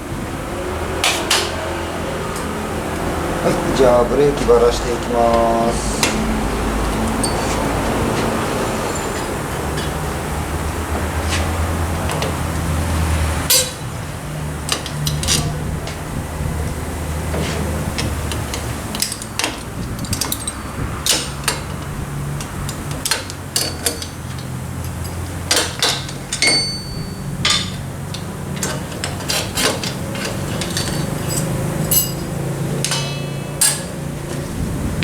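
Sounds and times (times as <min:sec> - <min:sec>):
metal tools knocking and clinking: 0:06.9 - 0:07.7, 0:13.5 - 0:14.0, 0:14.6 - 0:16.0, 0:17.3 - 0:34.6.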